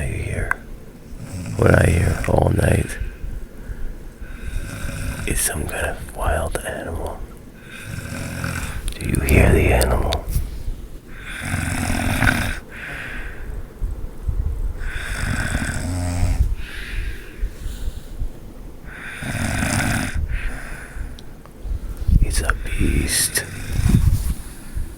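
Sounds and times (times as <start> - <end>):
person snoring loudly: 4.4 - 5.3, 7.8 - 10.3, 11.3 - 12.6, 14.8 - 16.5, 19.0 - 20.6.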